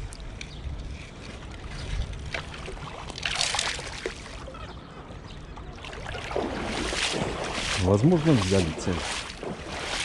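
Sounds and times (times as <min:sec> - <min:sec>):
shallow water sloshing: 0:01.7 - 0:04.8, 0:05.5 - 0:10.0
water splash: 0:02.3 - 0:04.4, 0:05.8 - 0:10.0.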